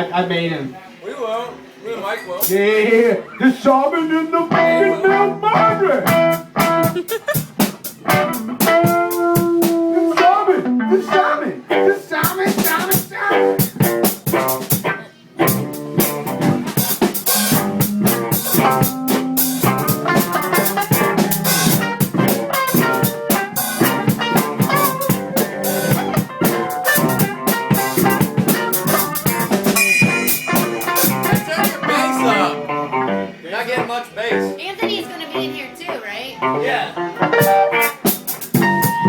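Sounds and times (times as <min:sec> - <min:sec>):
rock band playing: 0:04.5 - 0:33.4, 0:34.3 - 0:39.0
drum hits: 0:06.1 - 0:09.8, 0:15.6 - 0:32.4.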